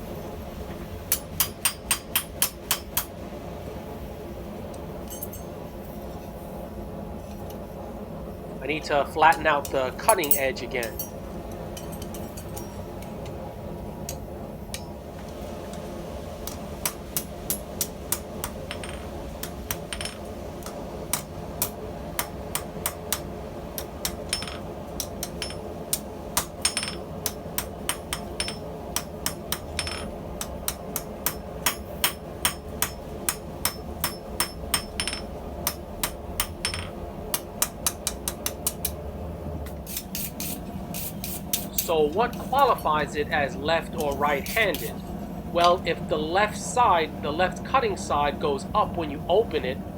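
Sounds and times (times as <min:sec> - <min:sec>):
steady hum: 0:00.0 - 0:49.9
hammer striking blade on anvil: 0:01.1 - 0:03.1, 0:26.4 - 0:38.8.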